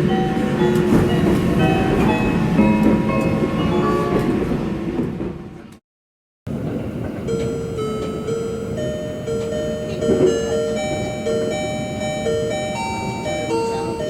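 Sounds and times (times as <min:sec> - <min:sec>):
moving train rumble: 0:00.0 - 0:05.8, 0:06.5 - 0:14.0.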